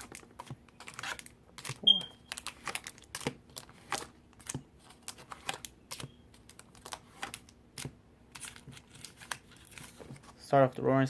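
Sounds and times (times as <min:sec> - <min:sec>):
foil wrappers crinkling: 0:00.0 - 0:07.6, 0:08.4 - 0:10.4.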